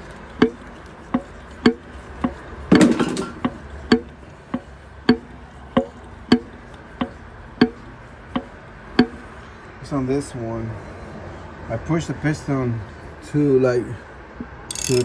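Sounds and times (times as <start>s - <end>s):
sharp metallic knocks: 0.0s - 9.5s, 14.7s - 15.0s.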